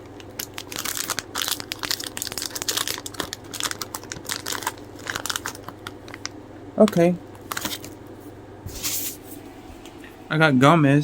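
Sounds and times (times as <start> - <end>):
plastic packaging crinkling: 0.1 - 6.4, 7.4 - 8.0.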